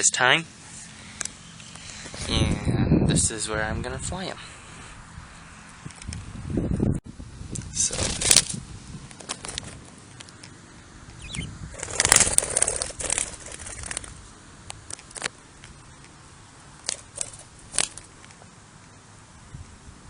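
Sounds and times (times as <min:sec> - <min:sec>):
bird wings flapping: 0:07.9 - 0:08.6, 0:11.3 - 0:14.2, 0:16.8 - 0:18.2.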